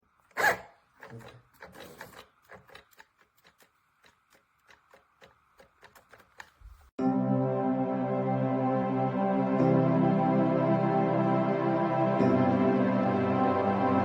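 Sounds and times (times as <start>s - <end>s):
sewing machine clicking: 0.2s - 6.9s.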